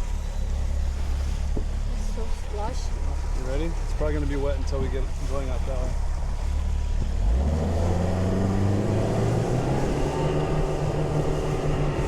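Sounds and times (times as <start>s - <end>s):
outboard motor throttling up: 0.0s - 12.0s.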